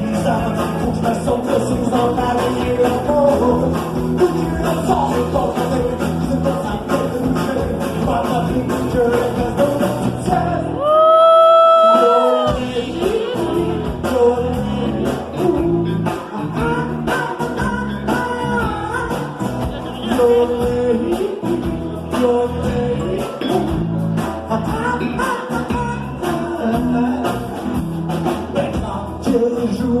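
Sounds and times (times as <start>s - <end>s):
wordless yodeled singing: 0.0s - 19.1s
band accompaniment: 0.0s - 30.0s.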